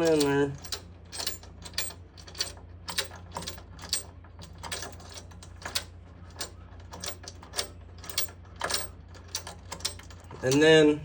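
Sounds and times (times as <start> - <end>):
small metal parts clicking: 0.0 - 10.8.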